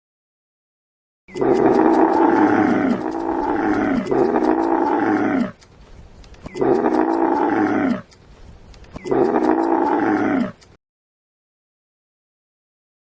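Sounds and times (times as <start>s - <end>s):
large animal calling: 1.3s - 5.6s, 6.5s - 8.2s, 9.0s - 10.6s.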